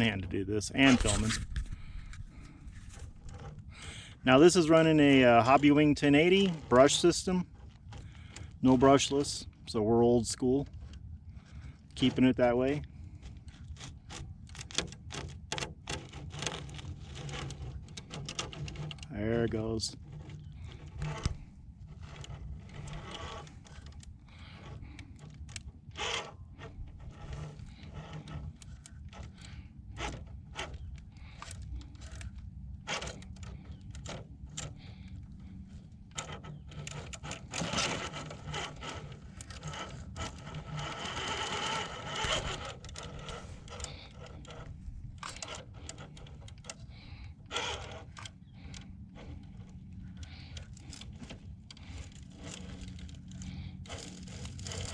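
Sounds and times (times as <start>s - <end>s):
scraping on rock: 0.0s - 9.4s, 16.1s - 54.9s
toy car motor hum: 20.4s - 54.9s.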